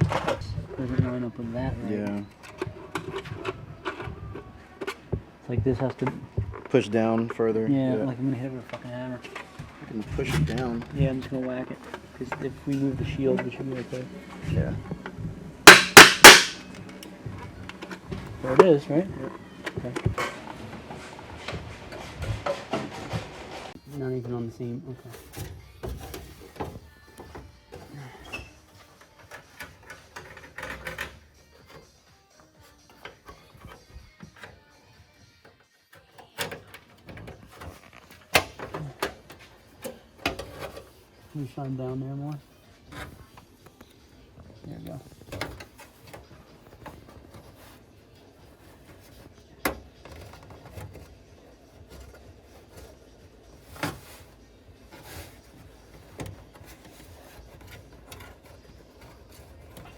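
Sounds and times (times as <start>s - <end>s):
hand tools clicking and knocking: 0.0s - 7.5s, 8.5s - 23.8s, 25.0s - 34.8s, 36.0s - 59.9s.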